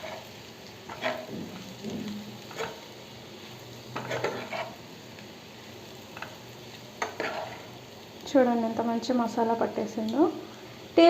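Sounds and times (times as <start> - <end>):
utensil scraping a pan: 0.0 - 0.3, 0.9 - 2.9, 3.9 - 4.8, 7.0 - 7.8
meat sizzling in a pan: 0.0 - 11.0.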